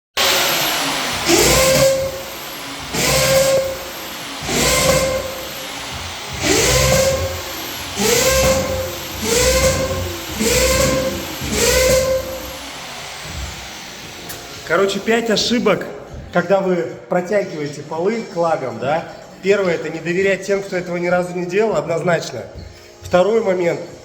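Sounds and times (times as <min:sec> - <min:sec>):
wooden floorboards squeaking: 0:04.4 - 0:12.6, 0:22.5 - 0:23.2.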